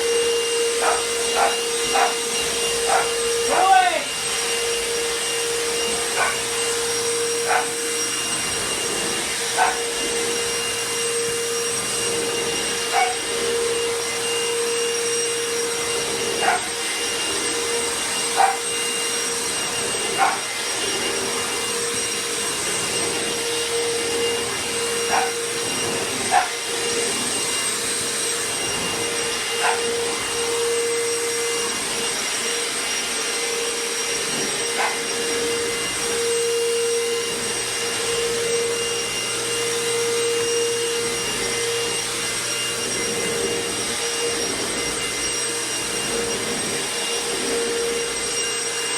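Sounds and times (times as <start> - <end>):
vacuum cleaner running: 0.0 - 48.9
dog barking: 0.7 - 3.6, 6.1 - 6.4, 7.4 - 7.8, 9.5 - 9.9, 12.9 - 13.2, 16.4 - 16.7, 18.3 - 18.7, 20.2 - 20.5, 25.1 - 25.4, 26.3 - 26.6, 29.6 - 29.9, 34.8 - 35.1.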